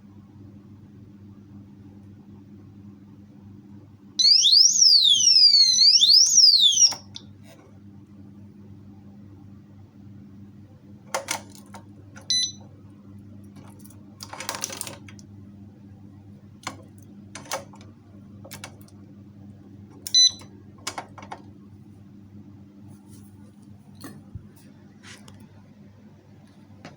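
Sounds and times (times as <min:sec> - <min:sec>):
high electronic beeps: 0:04.2 - 0:07.2.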